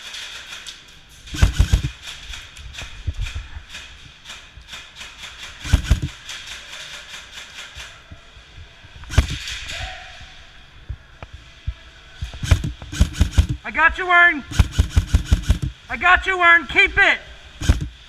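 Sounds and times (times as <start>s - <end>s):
airsoft guns firing: 1.3s - 2.5s, 5.0s - 7.0s, 9.1s - 9.7s, 12.4s - 15.9s, 17.6s - 18.0s.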